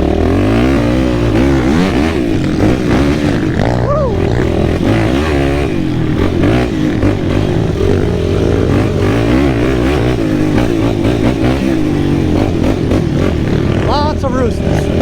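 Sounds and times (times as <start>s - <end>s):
quad engine revving: 0.0s - 15.0s.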